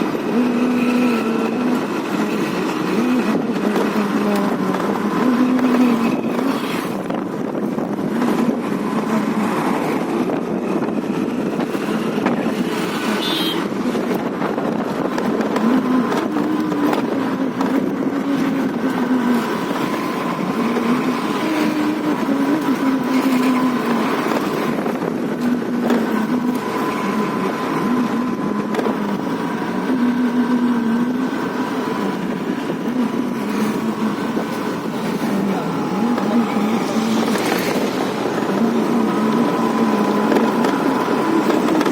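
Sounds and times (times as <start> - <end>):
scooter engine running: 0.0 - 41.9.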